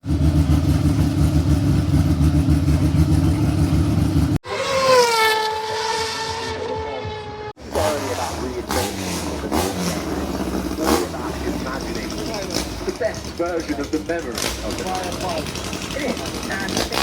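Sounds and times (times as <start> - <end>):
deep engine rumble: 0.0 - 4.5, 7.1 - 17.0.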